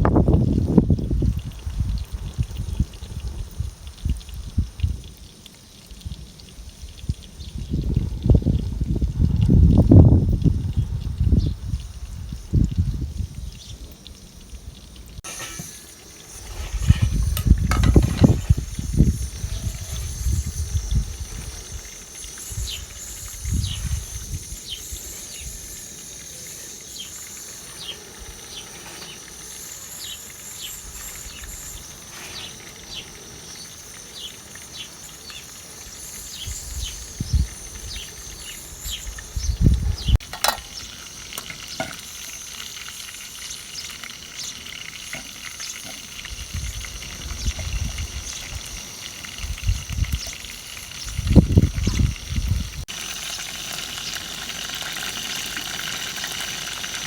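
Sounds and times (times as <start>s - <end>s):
food sizzling in oil: 0.2s - 57.0s.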